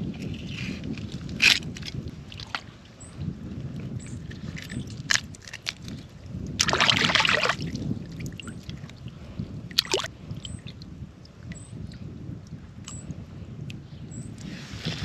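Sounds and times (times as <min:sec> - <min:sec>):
wind rumble on microphone: 0:00.0 - 0:15.0
water sloshing and splashing: 0:00.3 - 0:03.0, 0:04.2 - 0:11.4.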